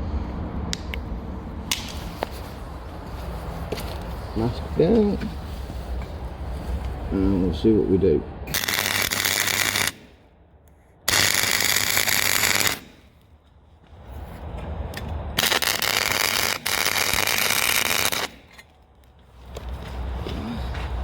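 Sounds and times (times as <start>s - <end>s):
welder arc crackling: 8.5s - 10.2s, 11.1s - 13.2s, 15.4s - 18.6s.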